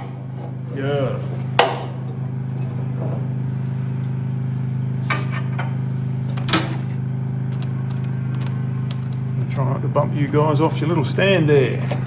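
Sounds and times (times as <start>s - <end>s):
steady low hum: 0.0s - 12.0s
metallic clinks of bolts and tools: 7.5s - 10.5s.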